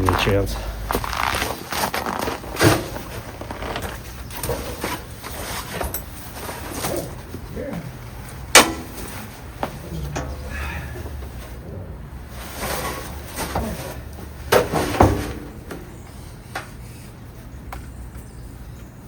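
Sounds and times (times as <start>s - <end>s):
engine humming: 0.0s - 19.0s.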